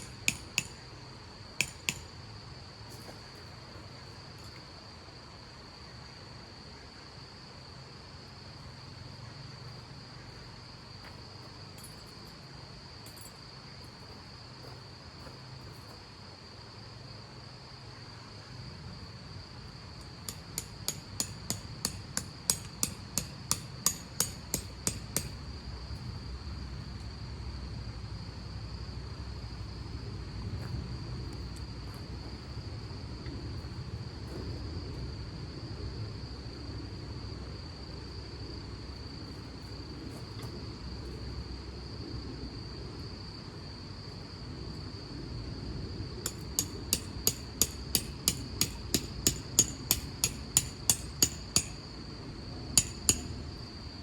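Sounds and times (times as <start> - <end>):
hammer striking: 0.0 - 0.8, 1.6 - 2.1, 20.3 - 25.4, 46.3 - 51.8, 52.8 - 53.4
steady low rumble: 25.4 - 43.1.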